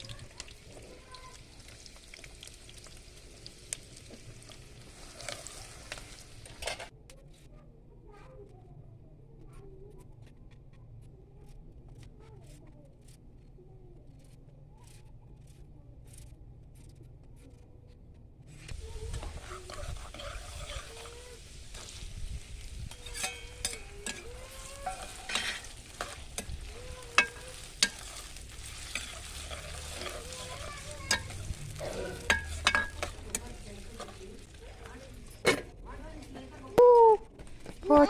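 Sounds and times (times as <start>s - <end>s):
food sizzling in a pan: 0.0s - 6.9s, 18.5s - 35.4s.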